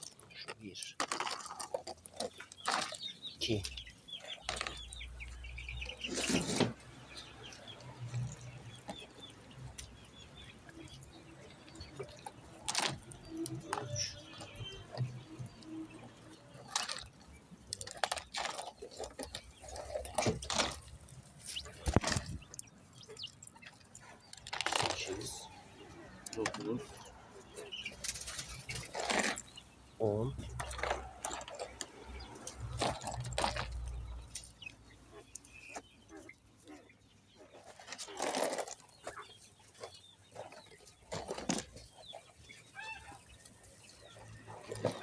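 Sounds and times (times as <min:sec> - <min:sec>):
handling knocks and rustles: 0:16.6 - 0:25.4
poultry calling softly: 0:42.7 - 0:43.4.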